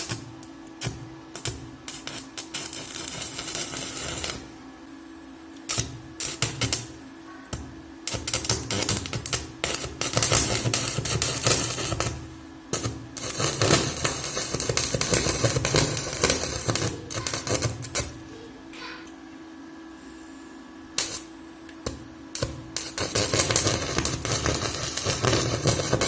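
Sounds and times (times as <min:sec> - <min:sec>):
welding arc crackling: 0:00.0 - 0:18.4, 0:20.9 - 0:26.0.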